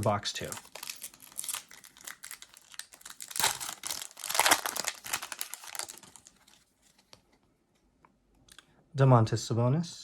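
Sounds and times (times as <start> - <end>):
foil wrapper crinkling and tearing: 0.0 - 6.6.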